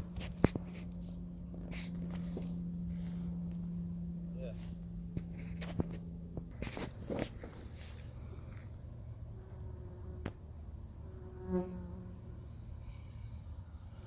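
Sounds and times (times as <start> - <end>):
bee buzzing: 0.0 - 13.2
insects chirring: 0.0 - 14.0.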